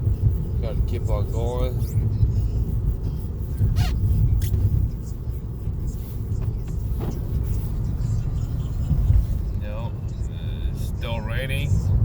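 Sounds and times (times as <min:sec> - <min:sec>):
car rumble inside cabin: 0:00.0 - 0:12.0
faint squeak: 0:03.7 - 0:04.1.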